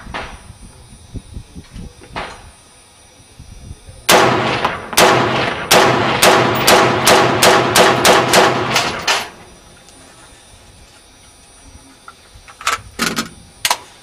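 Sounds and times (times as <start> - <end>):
rifle shots with echo: 4.1 - 9.4.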